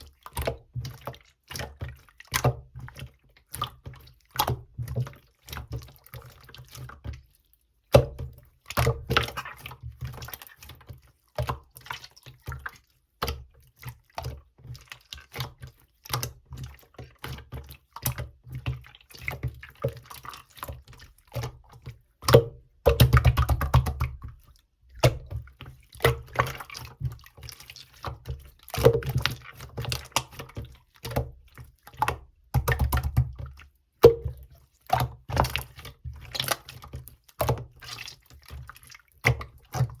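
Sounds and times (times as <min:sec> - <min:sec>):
slime squishing wet clicks: 0:15.0 - 0:40.0.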